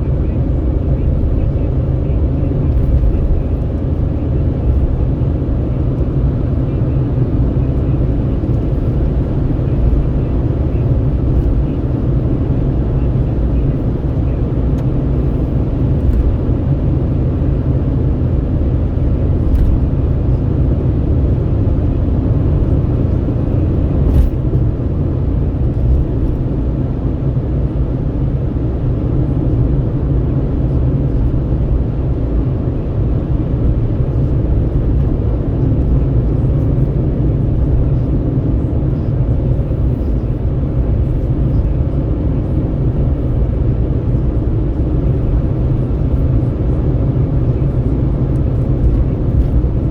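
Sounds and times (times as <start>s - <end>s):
vehicle road rumble at highway speed: 0.0s - 49.9s.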